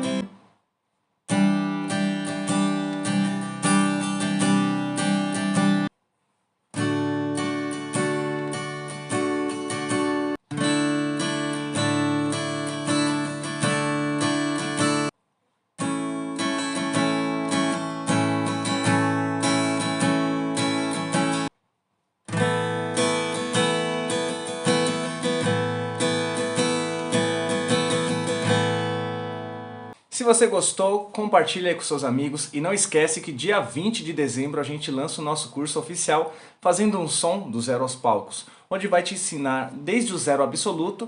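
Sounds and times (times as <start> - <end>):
acoustic guitar strumming chords: 0.0 - 0.4, 1.3 - 5.9, 6.7 - 15.1, 15.8 - 21.5, 22.3 - 30.0.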